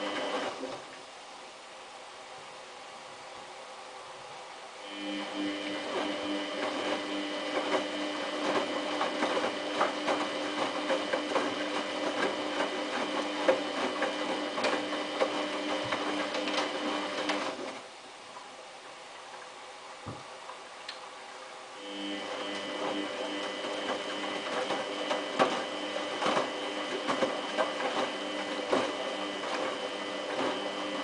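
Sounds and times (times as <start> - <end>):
washing machine motor whine: 0.0 - 1.0, 4.8 - 17.9, 21.7 - 31.0.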